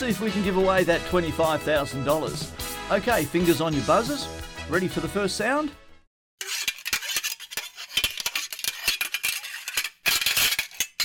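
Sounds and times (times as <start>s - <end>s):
metal scraping and clinking: 6.4s - 11.0s.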